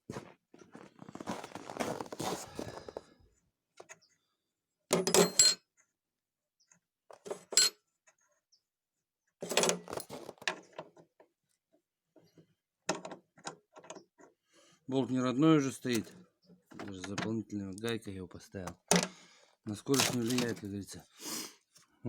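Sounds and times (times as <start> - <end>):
metal tools clinking: 5.0 - 5.6.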